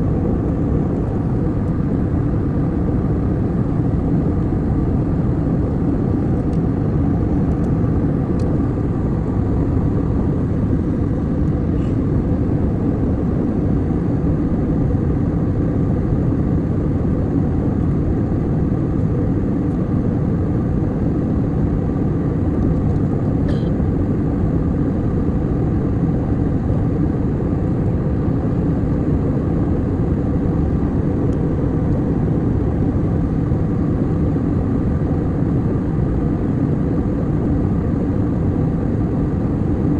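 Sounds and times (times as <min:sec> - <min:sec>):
airliner cabin drone: 0:00.0 - 0:39.9.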